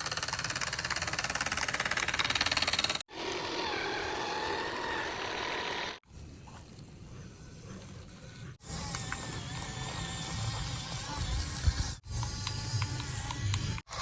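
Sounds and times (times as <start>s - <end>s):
toy vehicle motor buzzing: 0.0s - 14.0s.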